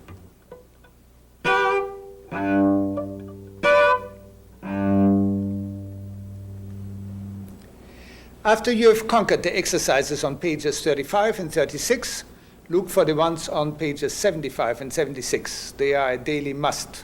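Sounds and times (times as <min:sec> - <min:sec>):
cello bowing: 0:00.0 - 0:08.0.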